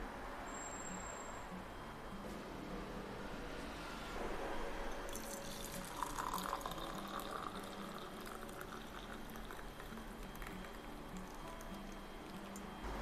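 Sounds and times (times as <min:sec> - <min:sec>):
tea being poured: 0:05.0 - 0:12.7.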